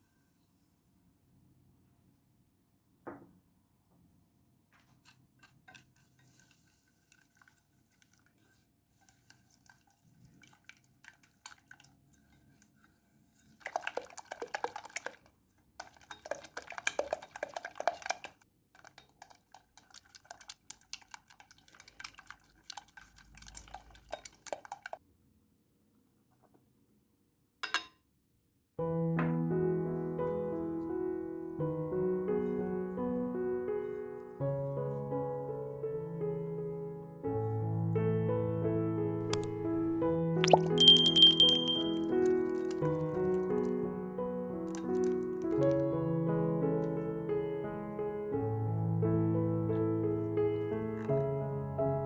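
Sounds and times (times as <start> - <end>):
rapid clicks of mixing: 5.0 - 25.0, 42.1 - 43.8, 44.6 - 45.9
utensil clinking against a bowl: 15.8 - 25.0, 40.5 - 43.4.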